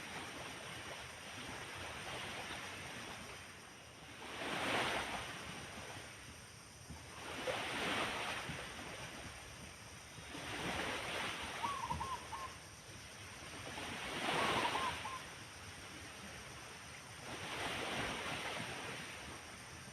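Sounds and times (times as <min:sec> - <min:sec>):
dove cooing: 0:11.6 - 0:12.5, 0:14.4 - 0:15.2.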